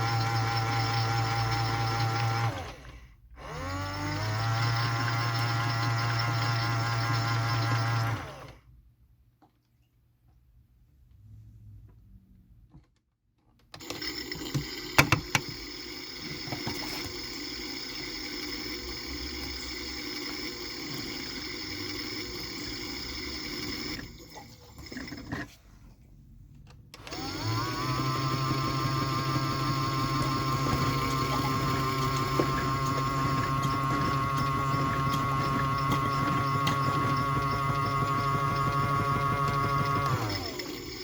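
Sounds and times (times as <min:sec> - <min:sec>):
washing machine running: 0:00.0 - 0:08.6, 0:13.8 - 0:25.4, 0:27.0 - 0:41.0
drum motor whine: 0:27.0 - 0:41.0.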